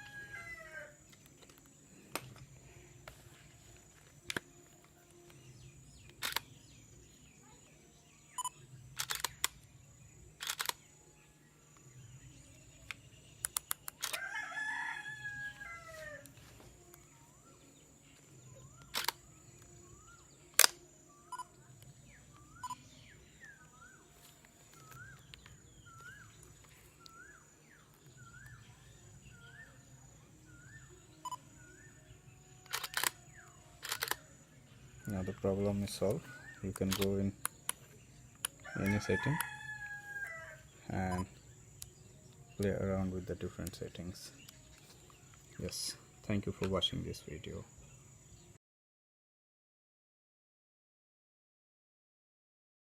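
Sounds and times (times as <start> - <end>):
rooster crowing: 0.0 - 1.0, 14.0 - 16.3, 38.6 - 40.6
camera shutter clicks: 6.2 - 6.5, 9.0 - 9.6, 10.4 - 10.9, 13.4 - 14.2, 18.8 - 19.2, 20.6 - 20.8, 32.6 - 33.2, 33.8 - 34.2, 36.8 - 37.6.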